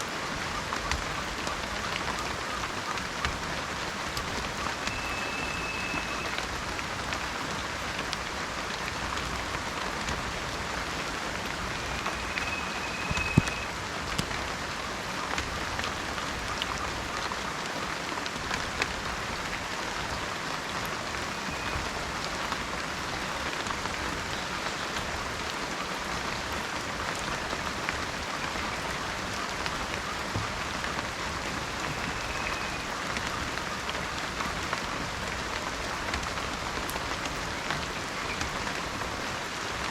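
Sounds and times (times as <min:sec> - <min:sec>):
heavy rain: 0:00.0 - 0:39.9
faint high bird note: 0:04.8 - 0:06.4, 0:11.7 - 0:13.7
water drip: 0:11.5 - 0:14.5.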